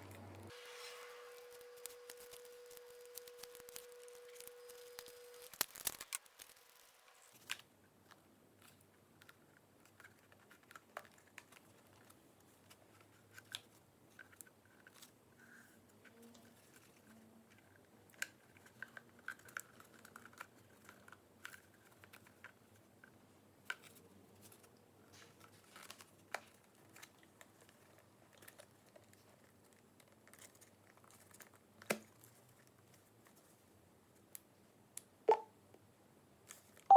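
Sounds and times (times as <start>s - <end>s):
small parts and tools clicking: 0.1s - 7.6s.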